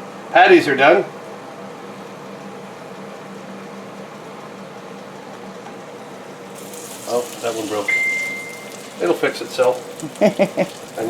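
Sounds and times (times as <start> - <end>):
food sizzling in hot fat: 6.5 - 11.0
steady hiss: 6.5 - 11.0.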